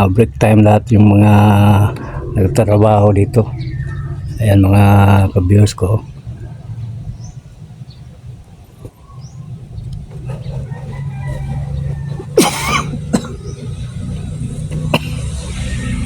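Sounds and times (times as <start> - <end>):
vehicle engine running: 0.0 - 16.0
rising metallic squeal: 1.2 - 5.3, 15.2 - 16.0.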